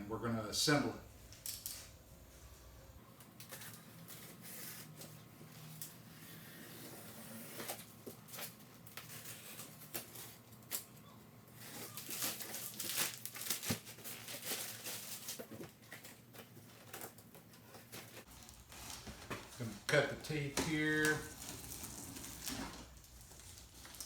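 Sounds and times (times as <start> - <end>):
plastic wrapping crinkling and tearing: 11.6 - 24.0.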